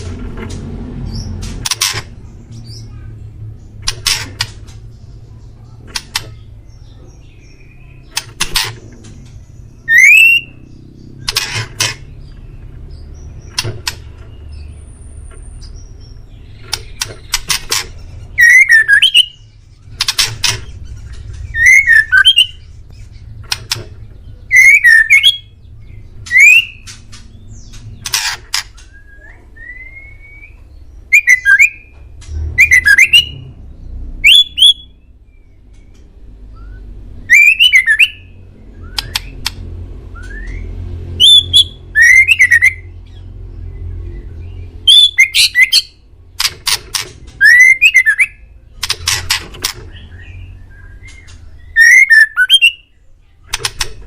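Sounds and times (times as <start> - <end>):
songbird singing: 0.0 - 54.0.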